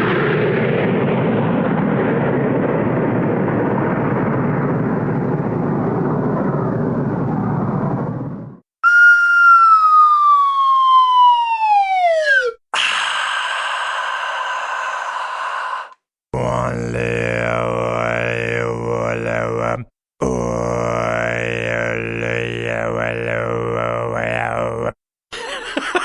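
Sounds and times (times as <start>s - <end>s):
whistle tone sliding down: 8.8s - 12.6s.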